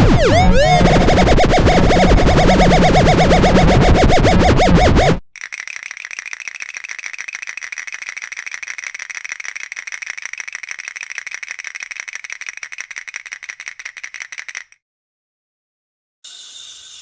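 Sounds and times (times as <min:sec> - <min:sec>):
spinner rattling clicks: 0:05.3 - 0:14.8.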